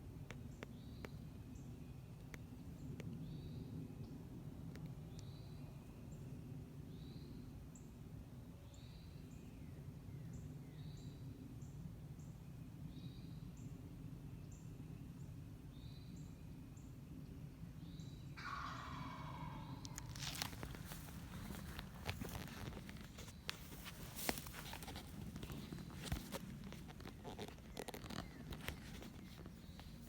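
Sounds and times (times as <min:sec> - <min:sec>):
low outdoor rumble: 0:18.4 - 0:30.0
small bird calling: 0:18.4 - 0:30.0.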